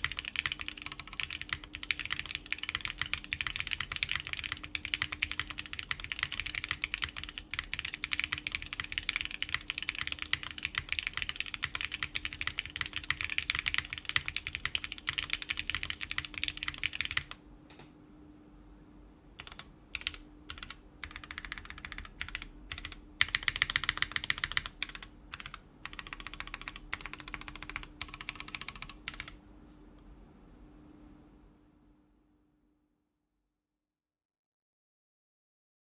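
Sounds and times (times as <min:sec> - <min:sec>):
typing on mechanical keyboard: 0:00.0 - 0:17.4, 0:19.4 - 0:29.4.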